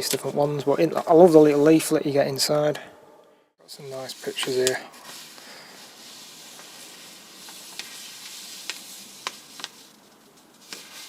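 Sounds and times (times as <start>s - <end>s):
faint steady hiss: 0.0s - 11.0s
paper rustling: 4.0s - 11.0s
sharp paper crinkles: 4.0s - 11.0s.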